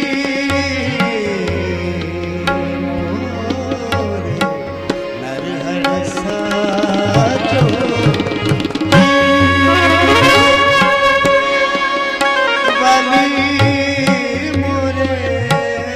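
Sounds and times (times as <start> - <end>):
qawwali music: 0.0 - 15.9
tabla drumming: 0.0 - 15.9
loud held chord: 2.6 - 14.8.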